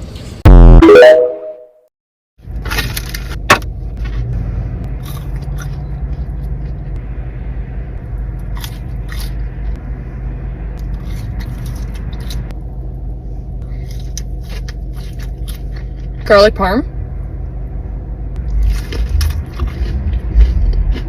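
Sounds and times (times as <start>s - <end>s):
car engine rumble in cabin: 2.4s - 21.0s.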